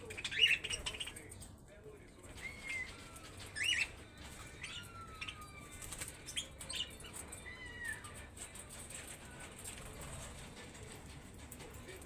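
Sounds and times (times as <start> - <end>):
parrots whistling and chirping: 2.4 - 4.0, 4.6 - 8.0.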